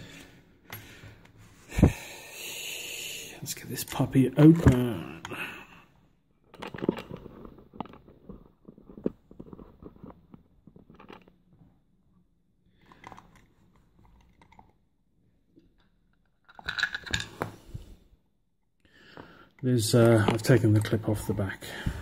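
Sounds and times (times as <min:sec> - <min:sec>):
small metal clicks and scrapes: 0:06.5 - 0:11.4.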